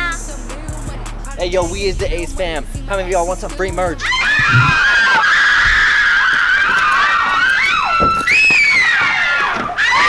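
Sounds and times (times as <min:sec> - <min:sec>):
crowd screaming: 0:04.0 - 0:10.0.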